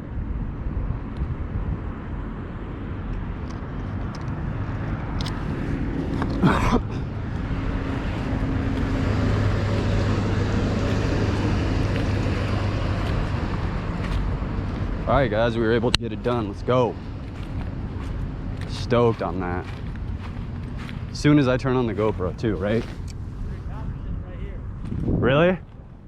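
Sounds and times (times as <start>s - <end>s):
low hum: 0.0s - 26.0s
road traffic: 0.0s - 26.0s
vehicle engine rumble: 0.0s - 26.0s.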